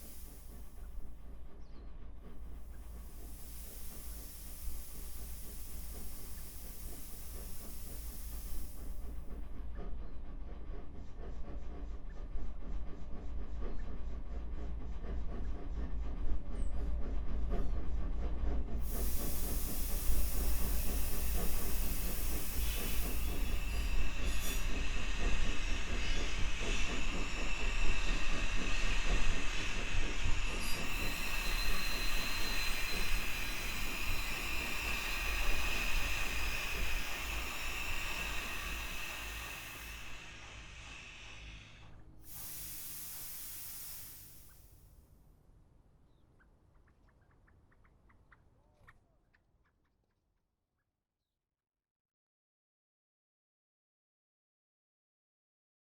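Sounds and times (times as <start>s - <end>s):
steam hiss: 0.0s - 1.4s, 2.2s - 9.9s, 18.7s - 44.9s
rhythmic locomotive chugging: 0.0s - 44.9s.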